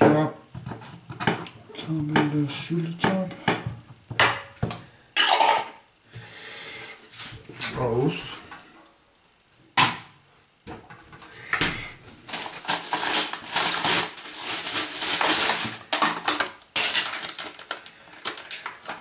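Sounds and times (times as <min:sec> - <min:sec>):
crisp bread crunching: 0:12.2 - 0:19.0.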